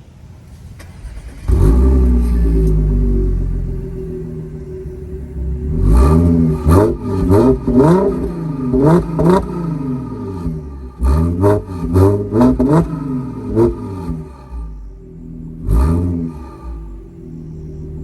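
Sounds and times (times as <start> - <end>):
car engine revving in blips: 0.8 - 18.0.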